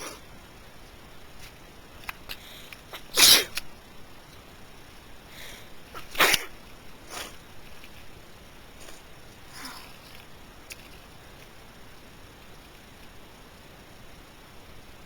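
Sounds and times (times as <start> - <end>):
person sneezing: 3.2 - 3.6.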